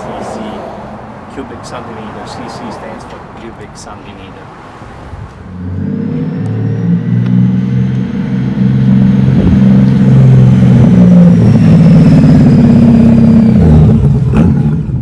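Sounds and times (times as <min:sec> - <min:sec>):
engine revving lightly: 0:05.0 - 0:15.0.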